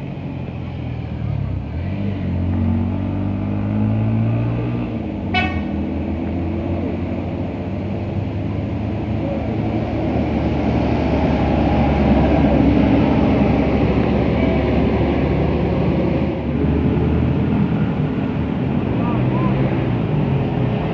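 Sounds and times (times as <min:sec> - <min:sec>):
vehicle engine rumbling: 0:00.0 - 0:20.9
short horn toot: 0:05.3 - 0:05.8.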